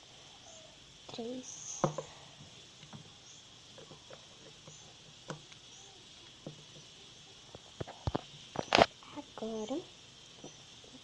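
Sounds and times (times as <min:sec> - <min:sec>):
low steady hiss: 0:00.0 - 0:11.0
small objects clicking and tapping: 0:01.7 - 0:09.0, 0:10.3 - 0:11.0.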